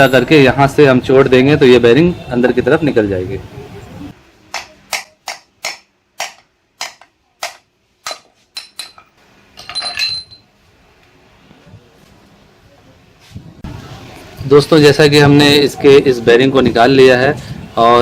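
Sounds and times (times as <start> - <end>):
metallic clatter and ring: 8.6 - 10.5.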